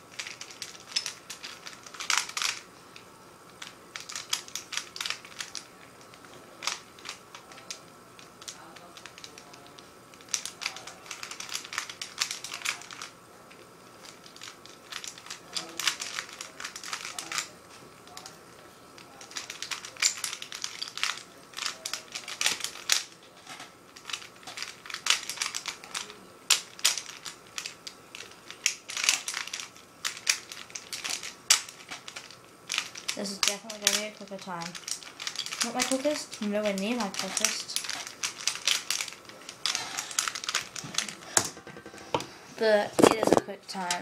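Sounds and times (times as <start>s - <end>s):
plastic puzzle cube clacking: 0.1s - 2.6s, 3.6s - 42.3s.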